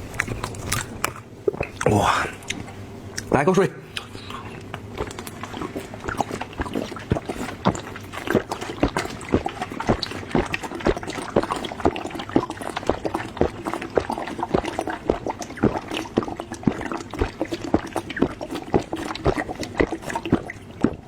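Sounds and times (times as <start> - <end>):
wet chewing and lip-smacking: 0.0 - 21.0.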